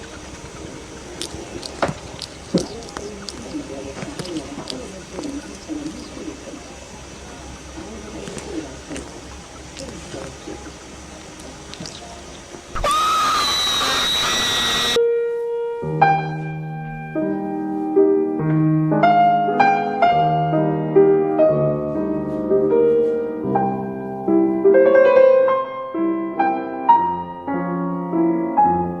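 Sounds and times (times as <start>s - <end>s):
loud hissing noise: 0.0s - 15.0s
piano music: 15.0s - 29.0s.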